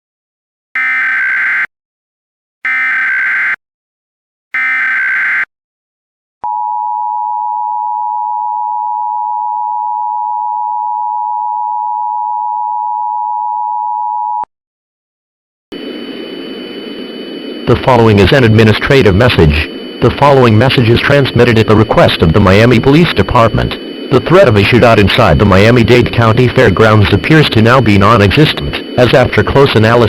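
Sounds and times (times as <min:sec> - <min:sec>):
two-tone attention signal: 0:02.7 - 0:03.6, 0:04.6 - 0:05.5, 0:17.6 - 0:30.0
digital data bursts: 0:17.6 - 0:30.0.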